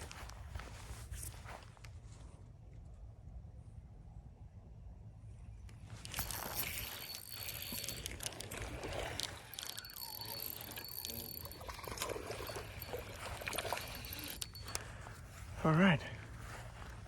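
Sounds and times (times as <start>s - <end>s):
clicks and handling noise: 5.6s - 15.2s
water splashing and trickling: 6.2s - 14.9s.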